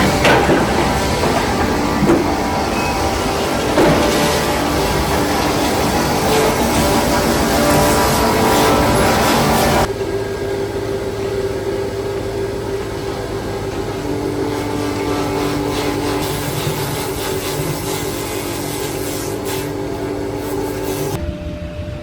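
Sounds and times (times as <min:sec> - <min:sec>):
sawmill machinery droning: 0:00.0 - 0:21.2
loud machine sound: 0:00.0 - 0:21.6.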